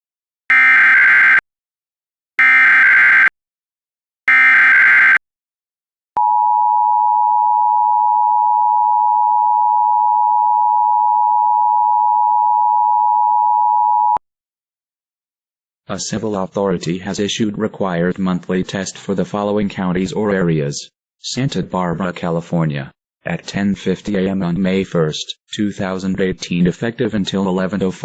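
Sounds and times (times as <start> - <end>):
two-tone alert signal: 4.3 - 5.2.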